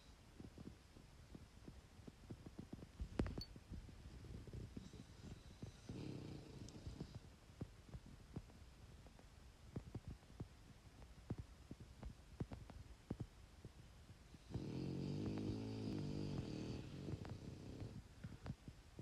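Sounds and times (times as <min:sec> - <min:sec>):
faint irregular clicks: 0:00.0 - 0:19.0
person snoring: 0:14.4 - 0:18.0.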